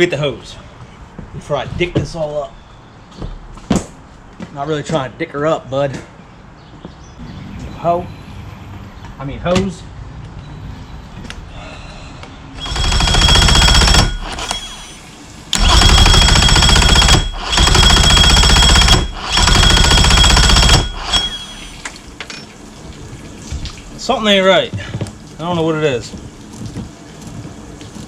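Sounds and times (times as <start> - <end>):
outboard engine starter cranking: 15.5 - 22.0.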